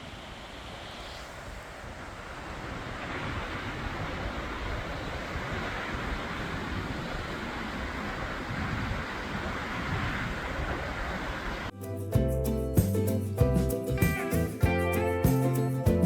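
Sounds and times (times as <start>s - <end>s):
wind buffeting microphone: 0.0s - 11.7s
waves surf: 0.0s - 11.8s.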